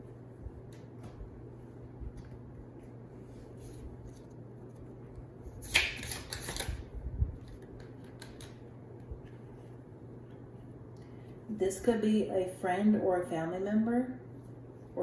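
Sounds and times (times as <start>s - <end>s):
low steady hum: 0.0s - 15.0s
cards riffling: 5.5s - 6.9s.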